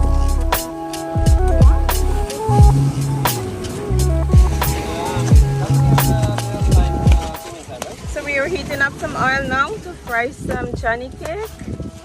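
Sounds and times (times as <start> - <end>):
electronic music with beat: 0.0 - 8.2.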